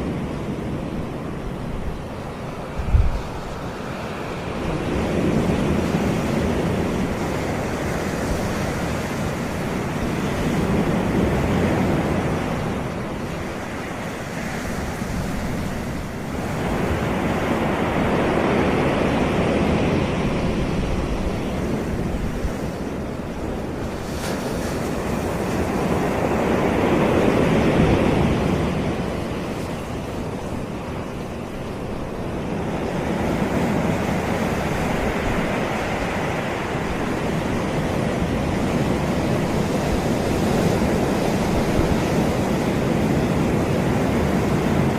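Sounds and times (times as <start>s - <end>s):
sea waves breaking on beach: 0.0s - 44.9s.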